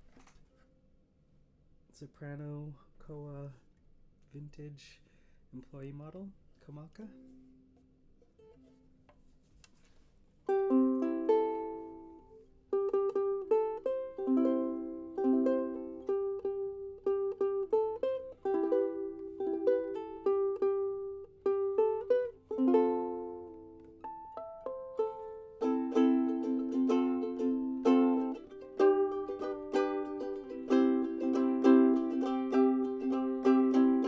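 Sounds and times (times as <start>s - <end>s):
ukulele playing: 10.5s - 34.0s.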